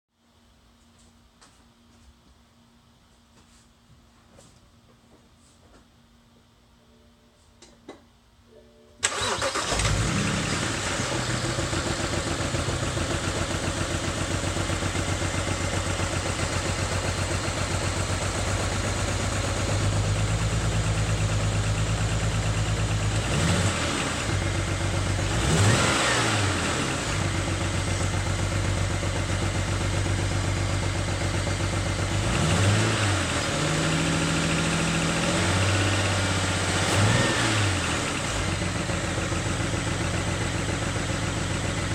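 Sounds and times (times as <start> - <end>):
car engine starting and idling: 9.0 - 41.9
engine revving: 9.1 - 13.6, 22.9 - 27.5, 32.1 - 38.6.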